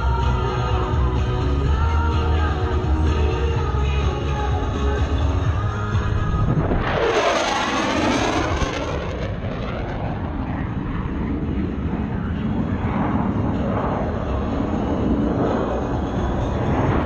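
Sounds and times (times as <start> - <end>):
jet aircraft flying past: 4.6 - 17.0.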